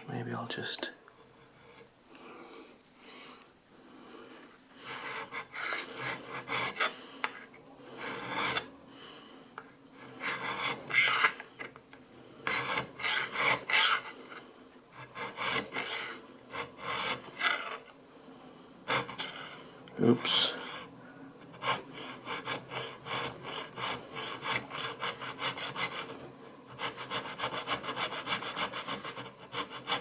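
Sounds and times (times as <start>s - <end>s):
hand file rasping on metal: 4.9s - 6.9s, 8.0s - 8.7s, 10.0s - 11.4s, 12.4s - 14.4s, 15.0s - 17.9s, 18.9s - 19.5s, 20.3s - 20.9s, 21.5s - 30.0s.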